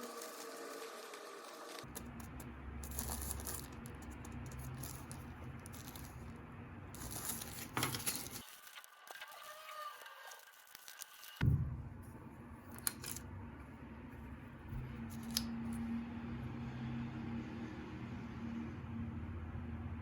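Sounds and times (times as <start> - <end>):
packaging rustling and crinkling: 7.0 - 11.4.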